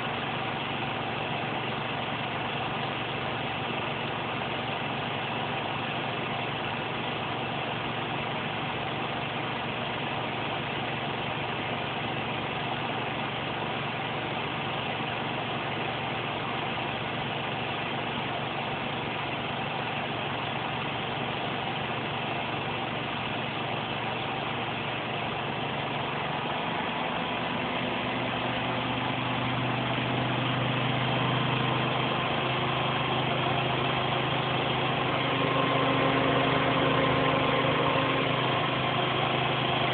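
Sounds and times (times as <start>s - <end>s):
washing machine spinning: 10.9s - 39.9s
low hum: 25.0s - 39.9s.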